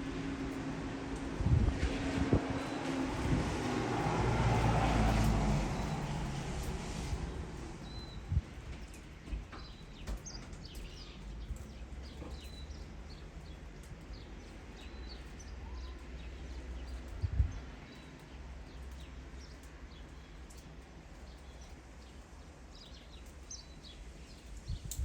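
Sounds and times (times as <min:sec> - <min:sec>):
low rumble: 0:00.0 - 0:08.8
small birds chirping: 0:07.8 - 0:25.0.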